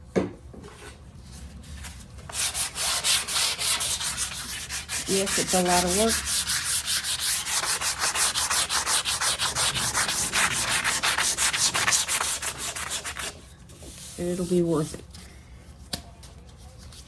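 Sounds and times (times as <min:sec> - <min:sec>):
sandpaper scratching strokes: 0:02.3 - 0:13.4.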